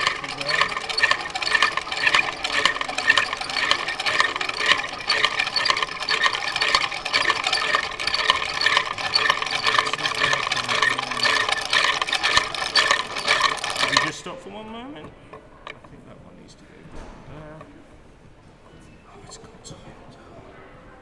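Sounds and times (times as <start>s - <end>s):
rope-making machine clicking rattle: 0.0s - 16.0s.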